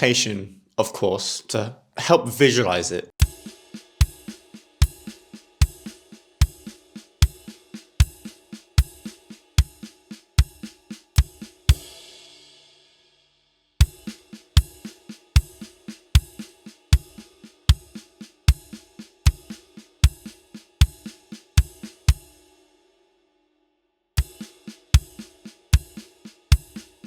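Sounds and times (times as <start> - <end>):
drum kit groove: 2.0 - 12.2, 13.8 - 22.3, 24.2 - 27.0.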